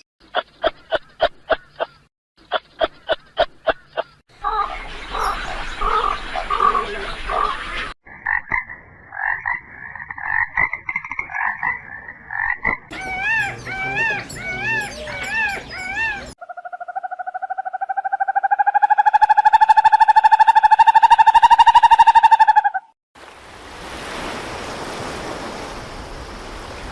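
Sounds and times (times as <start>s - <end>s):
pulsing chattering animal call: 9.4s - 22.9s
rising and falling animal calls: 11.2s - 23.0s.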